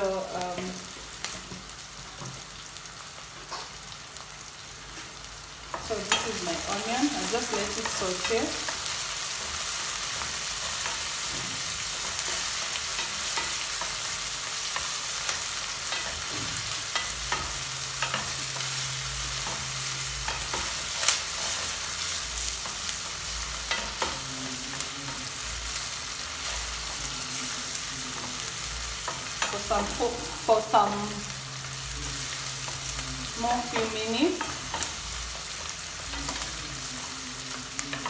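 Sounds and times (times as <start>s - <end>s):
onions sizzling in hot oil: 0.0s - 38.0s
sharp clicks of frying oil: 0.4s - 2.6s.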